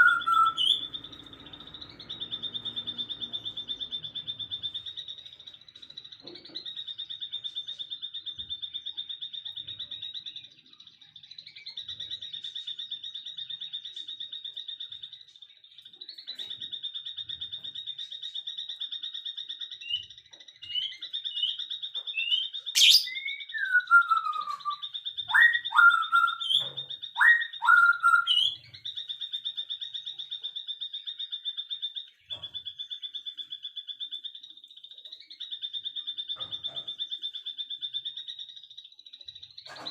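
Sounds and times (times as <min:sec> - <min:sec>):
bird chirps and whistles: 0:00.0 - 0:05.2, 0:19.8 - 0:29.1
bird high-pitched trill: 0:00.0 - 0:39.9.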